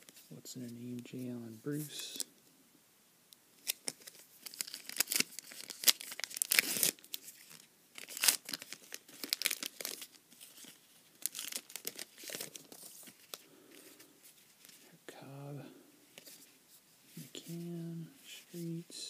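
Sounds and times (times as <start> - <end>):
card pack wrapper tearing and crinkling: 3.6 - 14.0.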